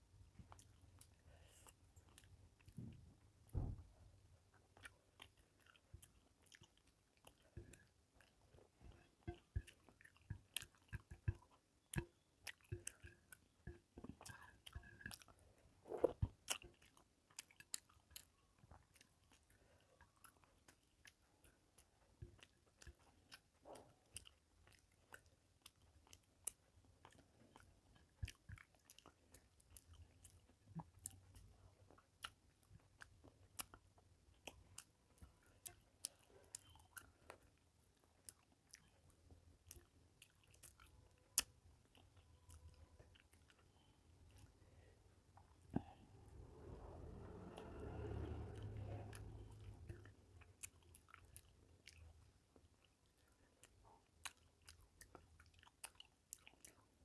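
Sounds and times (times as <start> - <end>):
close-up chewing: 0.0 - 57.0
wet mouth clicks and smacks: 8.9 - 31.5.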